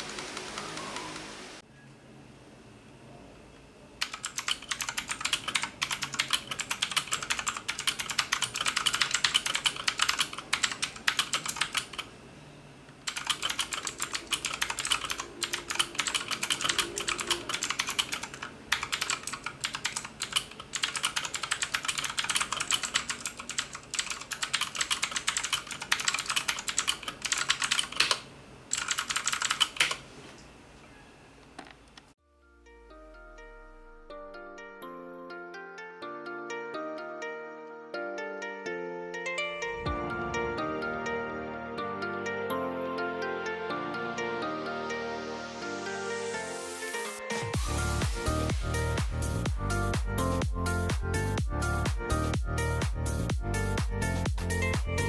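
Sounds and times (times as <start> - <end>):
mechanical keyboard typing: 0.0 - 1.4, 4.0 - 12.1, 13.0 - 30.0.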